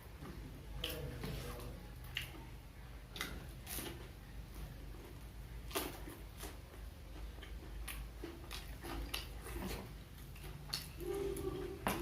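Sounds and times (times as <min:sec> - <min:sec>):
person chewing crunchy snacks: 0:05.6 - 0:12.0.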